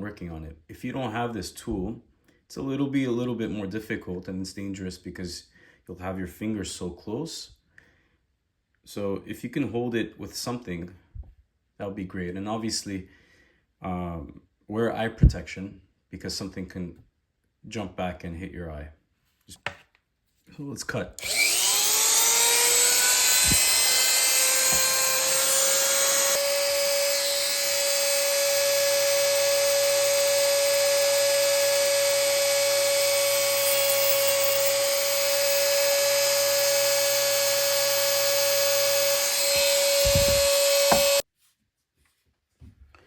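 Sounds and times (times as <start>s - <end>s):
rotary tool cutting metal: 21.2s - 41.2s.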